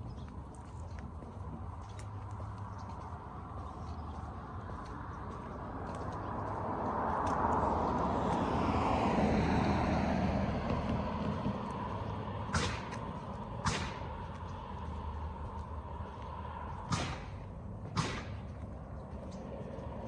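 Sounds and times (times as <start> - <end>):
car passing by: 5.5 - 20.0.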